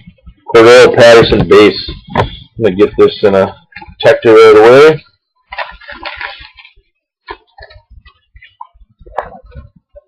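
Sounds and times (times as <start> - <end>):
plastic card sleeve crinkling: 5.5 - 7.8.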